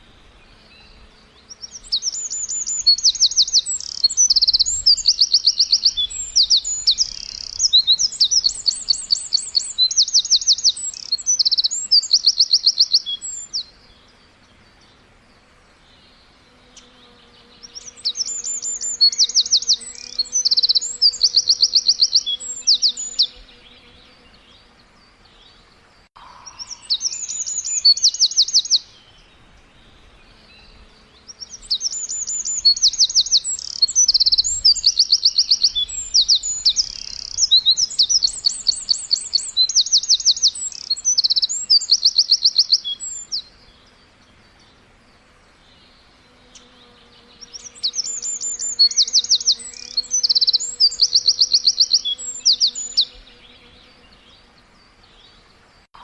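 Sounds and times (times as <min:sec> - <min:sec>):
songbird trilling and chirping: 0:00.7 - 0:14.1, 0:15.9 - 0:24.6, 0:26.2 - 0:29.3, 0:30.4 - 0:44.7, 0:45.7 - 0:54.4.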